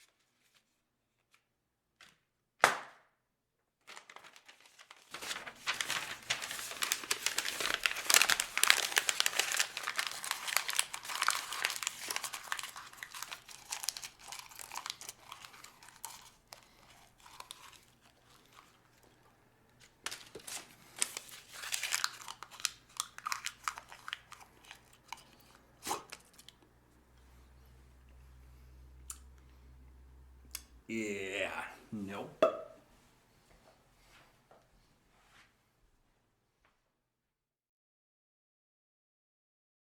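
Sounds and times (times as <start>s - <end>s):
paper being crumpled: 3.8s - 19.0s, 19.7s - 26.5s.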